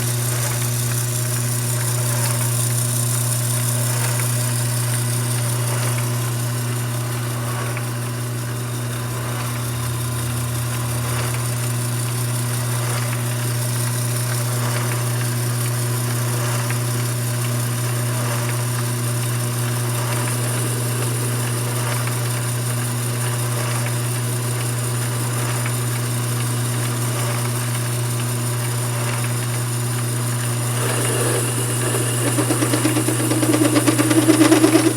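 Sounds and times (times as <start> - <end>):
mini lathe motor hum: 19.8 - 23.3, 30.4 - 34.9.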